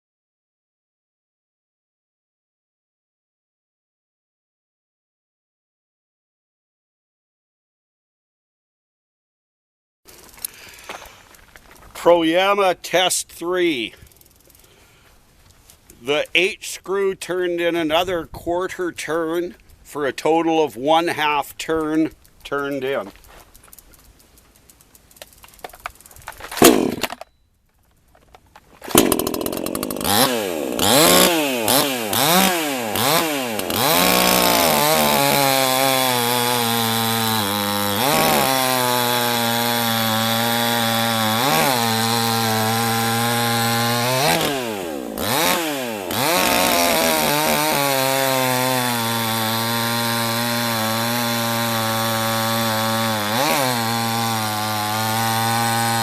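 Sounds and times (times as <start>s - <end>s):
chainsaw engine revving: 26.4s - 27.2s, 28.8s - 56.0s.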